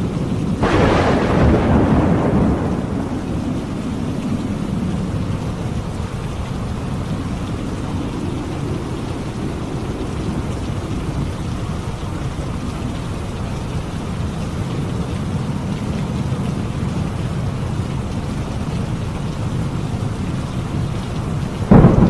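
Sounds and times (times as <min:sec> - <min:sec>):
heavy rain: 0:00.0 - 0:22.0
low rumble of thunder: 0:00.0 - 0:22.0.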